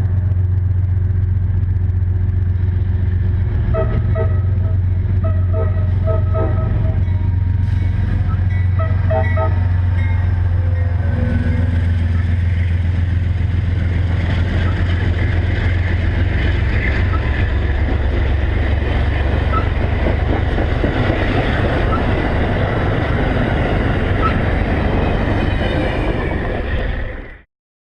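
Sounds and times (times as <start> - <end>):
diesel engine drone: 0.0 - 27.4
wheels rushing on rails: 0.0 - 27.5
locomotive horn blasts: 3.7 - 7.4, 8.2 - 11.7.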